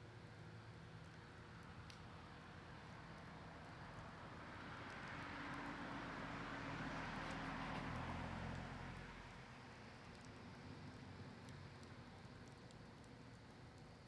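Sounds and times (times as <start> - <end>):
campfire crackling: 1.0 - 5.8, 9.7 - 14.0.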